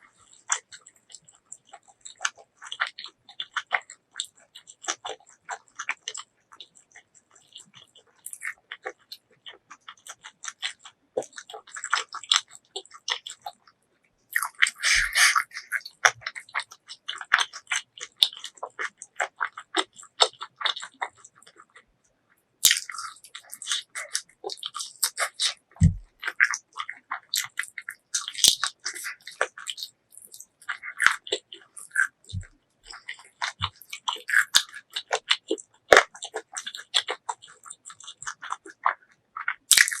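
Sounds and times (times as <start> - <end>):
wet chewing and biting: 0.1 - 21.8, 22.6 - 40.0.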